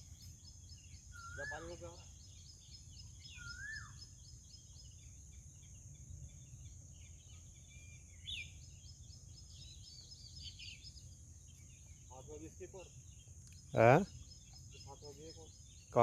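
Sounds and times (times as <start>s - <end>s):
birds calling: 0.0s - 5.5s, 6.3s - 16.0s
high bird chirps: 1.1s - 4.2s
whistled bird note: 1.2s - 2.0s.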